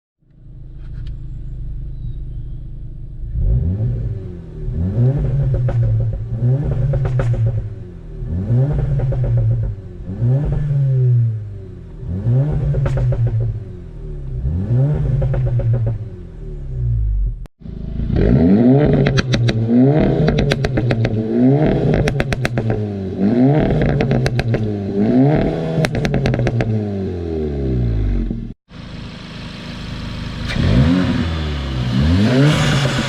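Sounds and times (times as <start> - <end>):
car engine revving: 0.4 - 33.0
exhaust pops and bangs: 5.2 - 7.7, 12.5 - 13.6, 18.8 - 22.8, 23.6 - 24.7, 25.3 - 26.8.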